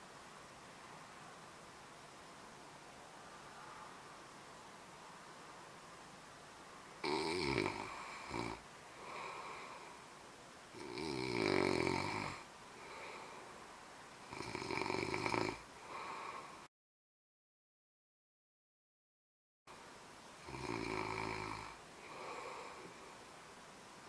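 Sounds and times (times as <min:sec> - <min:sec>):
quiet breaths: 0:00.0 - 0:16.7, 0:19.7 - 0:24.0
man snoring: 0:07.0 - 0:09.8, 0:10.8 - 0:13.3, 0:14.2 - 0:16.5, 0:20.4 - 0:22.8.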